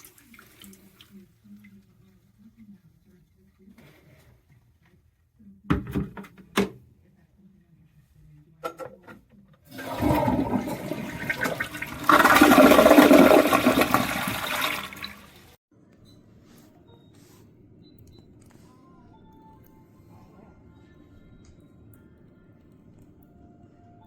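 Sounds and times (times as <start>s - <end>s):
toilet flushing water rush: 9.7s - 15.6s.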